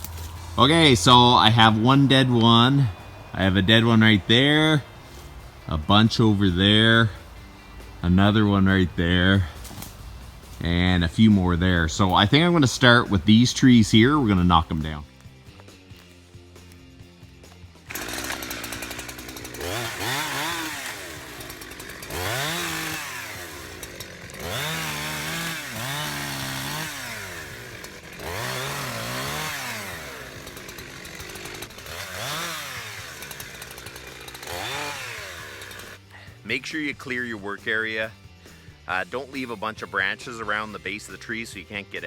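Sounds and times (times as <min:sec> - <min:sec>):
chainsaw cutting wood: 0:00.0 - 0:42.0.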